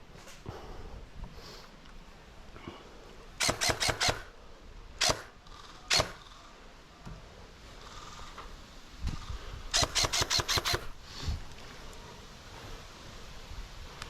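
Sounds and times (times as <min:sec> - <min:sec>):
airsoft gun shots: 0:03.4 - 0:04.3, 0:05.0 - 0:05.3, 0:05.9 - 0:06.2, 0:09.7 - 0:10.9.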